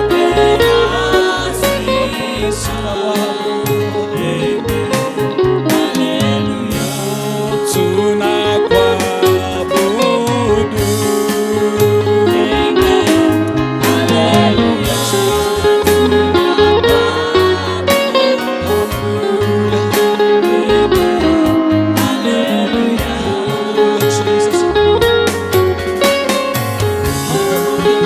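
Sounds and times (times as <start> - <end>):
bass line: 0.0 - 3.1, 3.7 - 20.0, 20.7 - 28.0
guitar: 0.0 - 28.0
drum beat: 12.8 - 18.0, 25.0 - 28.0.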